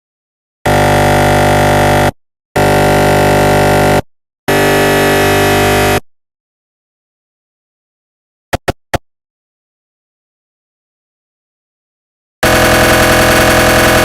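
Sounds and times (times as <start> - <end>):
mri scanner loud blasts: 12.4 - 14.0.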